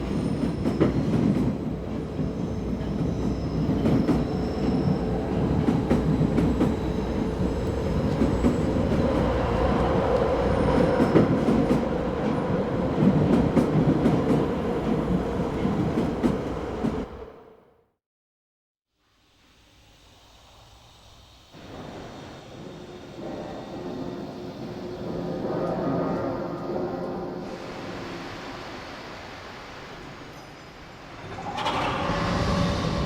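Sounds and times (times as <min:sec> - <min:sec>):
heavy rail car rolling rumble: 0:00.0 - 0:17.2.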